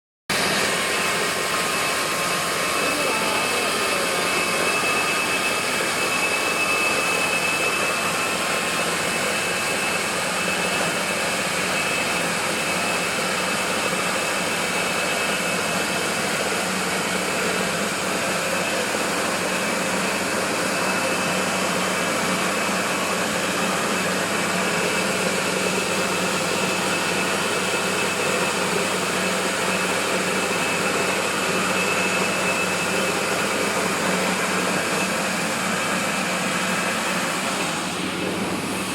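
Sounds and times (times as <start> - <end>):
milling machine whirring: 0.3 - 38.9
faint high whine: 0.7 - 13.2.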